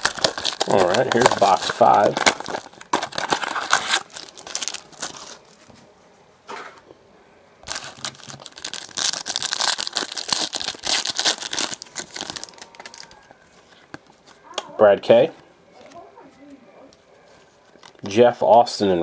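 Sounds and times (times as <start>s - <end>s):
plastic wrapping crinkling: 0.0s - 5.7s, 7.6s - 14.5s, 17.4s - 18.0s.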